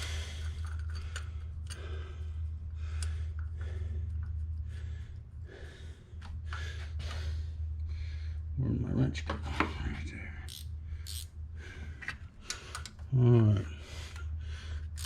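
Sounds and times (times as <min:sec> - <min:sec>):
person breathing: 0:00.0 - 0:08.5, 0:13.7 - 0:15.0
steady low hum: 0:00.0 - 0:15.0.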